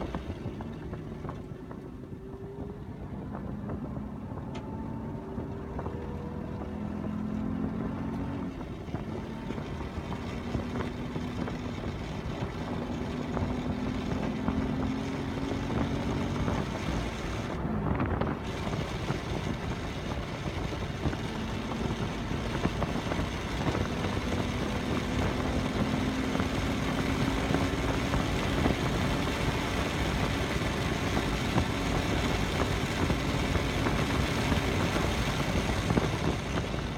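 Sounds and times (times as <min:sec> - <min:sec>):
race car engines: 0:00.0 - 0:36.9.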